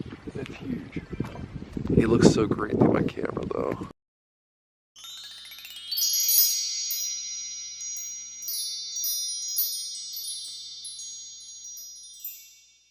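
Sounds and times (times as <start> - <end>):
bright ringing chimes: 5.0 - 12.9.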